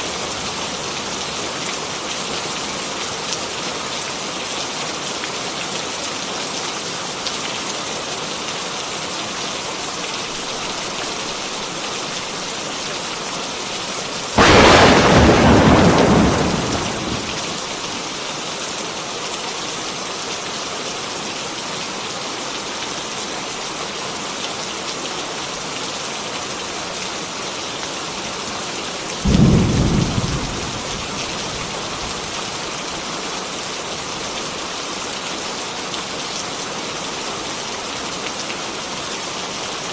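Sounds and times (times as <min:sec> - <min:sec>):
heavy rain pouring: 0:10.3 - 0:18.1, 0:28.3 - 0:35.2
thunder claps: 0:14.4 - 0:17.7, 0:29.3 - 0:32.3.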